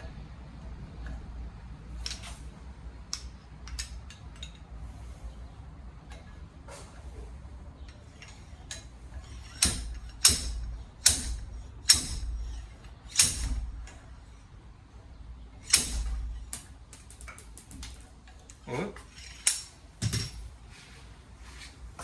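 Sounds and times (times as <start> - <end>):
metal knocks and clanks: 8.1 - 14.0, 15.6 - 18.4, 19.0 - 20.5.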